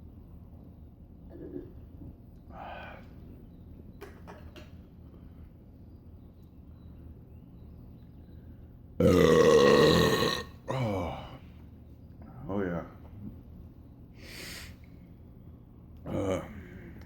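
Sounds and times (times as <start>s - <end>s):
man burping loudly: 9.0s - 11.2s.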